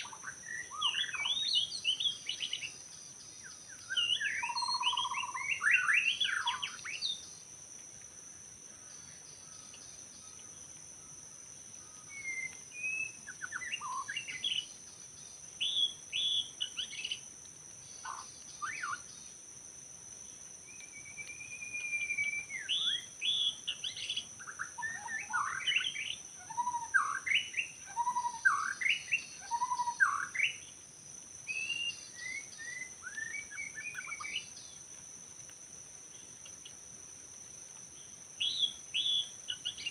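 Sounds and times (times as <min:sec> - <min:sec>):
bird singing whistled phrases: 0:00.0 - 0:02.8, 0:03.4 - 0:07.2, 0:12.1 - 0:14.7, 0:15.6 - 0:17.2, 0:18.0 - 0:19.0, 0:20.7 - 0:30.6, 0:31.5 - 0:34.5, 0:38.4 - 0:39.9.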